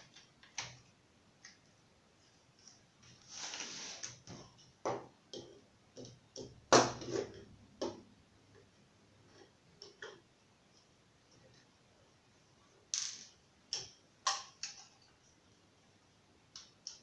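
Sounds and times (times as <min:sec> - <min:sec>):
scraping rustle: 0:03.2 - 0:04.2.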